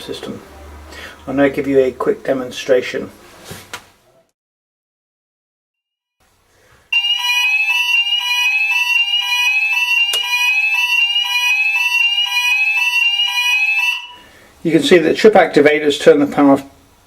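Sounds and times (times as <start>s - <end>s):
fire alarm warbling: 6.9s - 14.3s.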